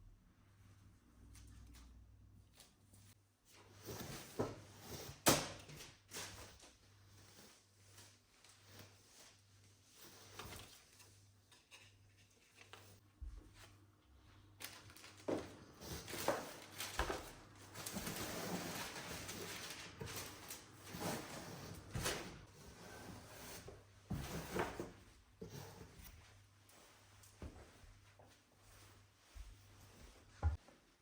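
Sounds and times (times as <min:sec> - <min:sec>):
rustling: 0:14.6 - 0:22.4.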